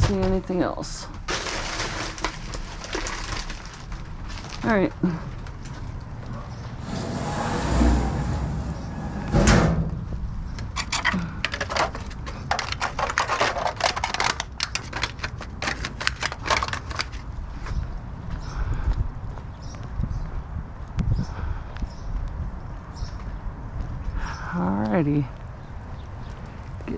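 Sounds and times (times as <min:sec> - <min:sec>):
loud thud: 0:06.8 - 0:10.3
footsteps on hard ground: 0:09.8 - 0:24.2.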